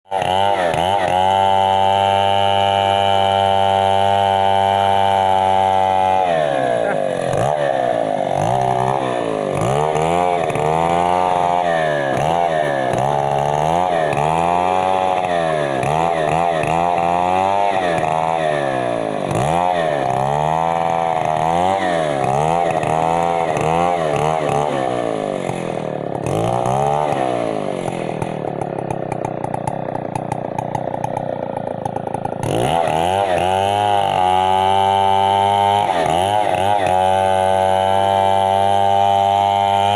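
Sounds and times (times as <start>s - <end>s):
chainsaw engine revving: 0.1s - 39.9s.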